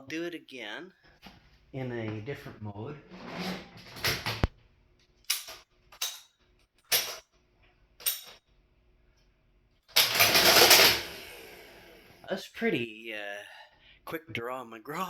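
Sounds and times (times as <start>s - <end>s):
cash register mechanism clattering: 3.2s - 4.5s, 5.2s - 6.3s, 6.9s - 7.2s, 8.0s - 8.4s, 9.9s - 11.4s
cash drawer ringing: 3.4s - 4.5s, 6.9s - 7.2s, 8.0s - 8.4s, 9.9s - 11.8s
cash register keys clacking: 5.2s - 6.3s, 6.9s - 7.2s, 8.0s - 8.4s, 9.9s - 11.3s.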